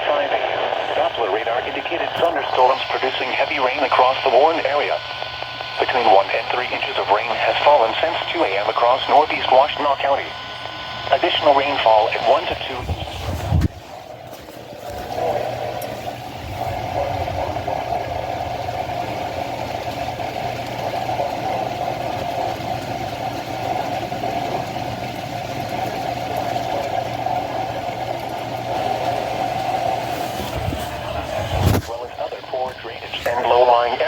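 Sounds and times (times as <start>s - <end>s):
broadcast voice: 0.0s - 13.5s, 31.1s - 34.0s
radio static with hum: 0.0s - 34.0s.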